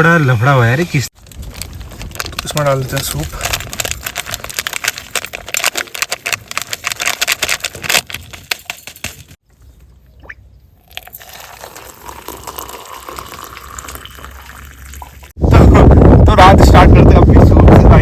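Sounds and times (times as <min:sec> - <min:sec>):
packet crinkling: 0:01.2 - 0:09.4, 0:11.0 - 0:14.8
liquid gushing: 0:11.0 - 0:15.3.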